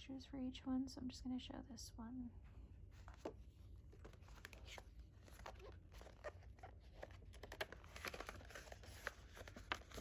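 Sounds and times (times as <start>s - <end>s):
paper and plastic rustling: 3.0s - 10.0s.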